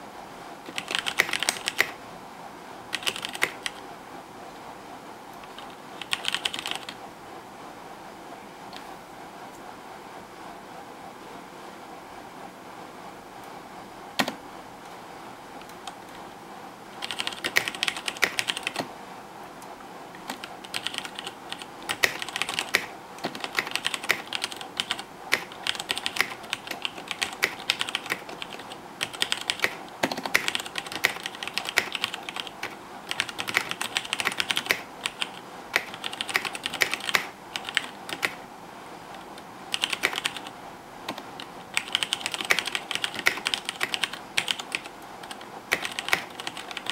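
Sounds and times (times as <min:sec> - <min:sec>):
mechanical keyboard clicks: 0:00.7 - 0:02.0, 0:02.9 - 0:03.8, 0:05.4 - 0:07.0, 0:17.0 - 0:18.9, 0:20.2 - 0:38.4, 0:39.7 - 0:40.5, 0:41.1 - 0:46.9.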